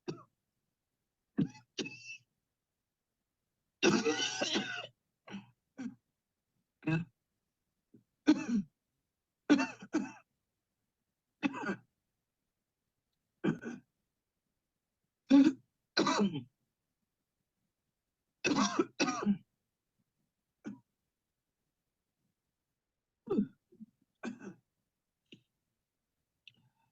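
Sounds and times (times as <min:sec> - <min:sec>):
person coughing: 0:03.8 - 0:06.0, 0:08.3 - 0:08.7, 0:11.4 - 0:11.9, 0:13.4 - 0:13.9, 0:15.3 - 0:16.5, 0:18.5 - 0:19.5, 0:24.2 - 0:24.6.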